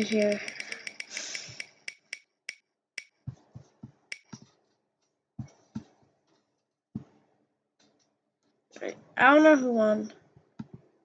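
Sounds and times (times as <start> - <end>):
spinner wheel ticking: 0.0 - 3.2.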